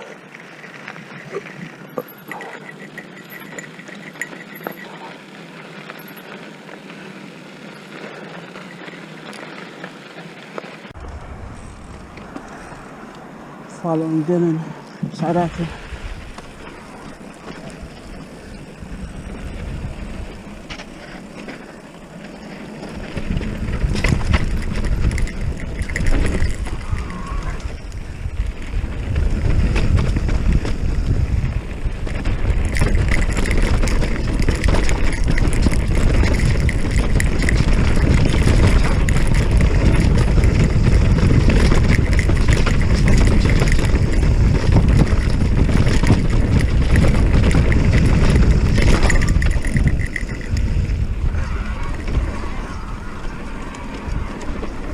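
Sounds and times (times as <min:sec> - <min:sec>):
bike rattling over rocky trail: 0:00.0 - 0:12.4, 0:15.1 - 0:54.9
wind buffeting microphone: 0:15.1 - 0:54.9
scattered clicks: 0:16.3 - 0:54.9.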